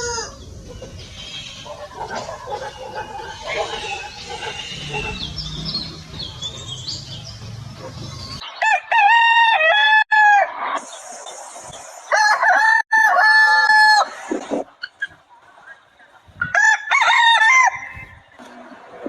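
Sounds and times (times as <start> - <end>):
scattered high bird calls: 0.0 - 8.6
rooster crowing: 8.6 - 10.6, 12.1 - 14.1, 16.5 - 18.1.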